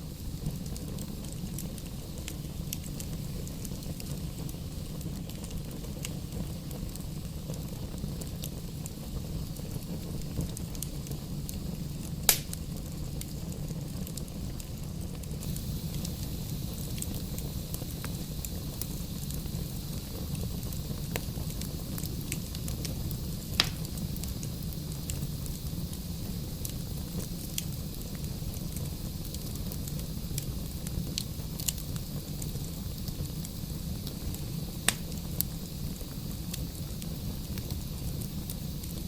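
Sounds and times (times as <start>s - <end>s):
fire rumbling: 0.0s - 39.0s
loud pops from fire: 0.0s - 39.0s
logs crackling: 12.3s - 12.6s, 23.6s - 24.0s.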